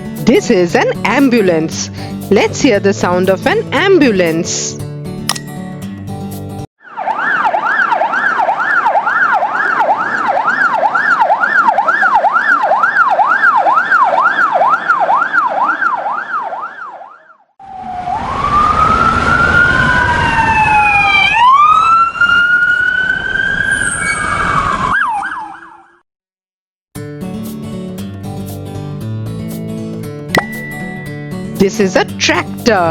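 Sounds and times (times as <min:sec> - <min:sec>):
ambulance siren: 0:06.8 - 0:26.0.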